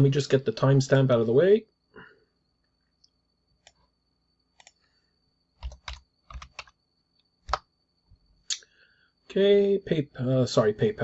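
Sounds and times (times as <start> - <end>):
computer keys clicking: 3.6 - 3.8, 4.5 - 4.8, 5.6 - 6.8, 7.4 - 7.7.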